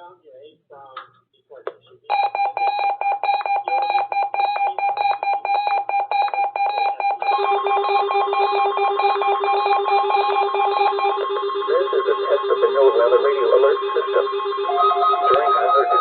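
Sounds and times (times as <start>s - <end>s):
lower pulsing alarm: 2.1s - 16.0s
rapidly pulsing buzzy beep: 2.1s - 16.0s.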